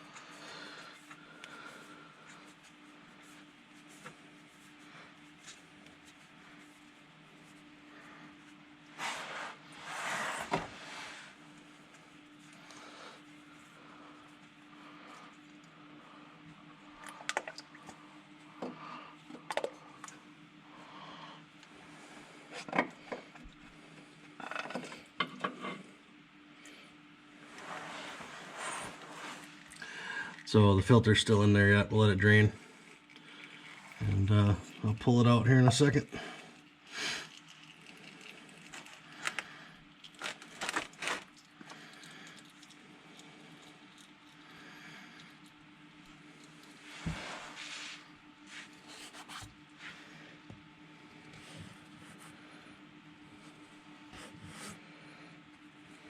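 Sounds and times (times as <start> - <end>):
steady low hum: 0.0 - 56.0
crinkling scrapes and clicks: 36.6 - 47.5.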